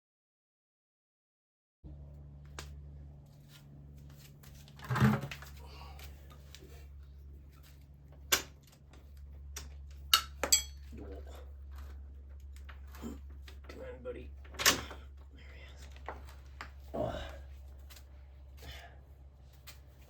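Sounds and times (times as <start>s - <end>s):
steady low hum: 1.9s - 20.0s
tools clinking on metal: 10.0s - 10.9s
sharp metal clanks: 10.1s - 10.9s.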